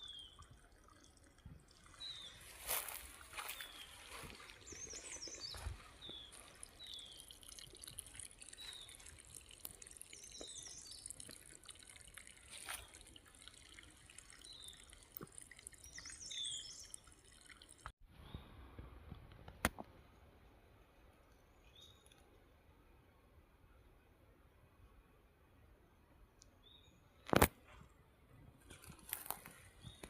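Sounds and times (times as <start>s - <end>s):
water trickling and dripping: 0.0s - 18.0s
bird chirping: 1.9s - 7.6s, 8.5s - 11.4s, 15.7s - 17.2s.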